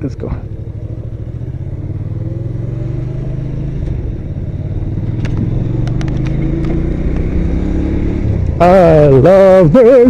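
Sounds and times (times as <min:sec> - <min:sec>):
motorcycle engine accelerating: 0:00.0 - 0:10.0.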